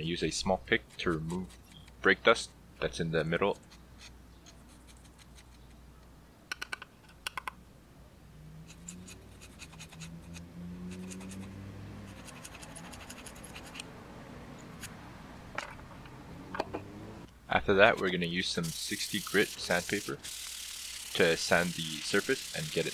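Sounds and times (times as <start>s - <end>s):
metal pick scraping metal: 12.1s - 13.9s, 14.6s - 15.0s.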